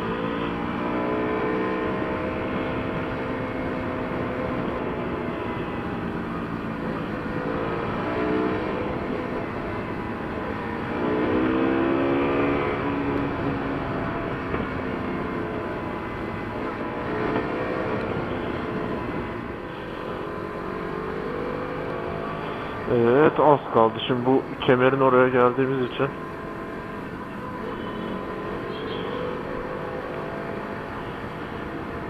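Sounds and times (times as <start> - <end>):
motorcycle engine running: 0.0 - 23.2.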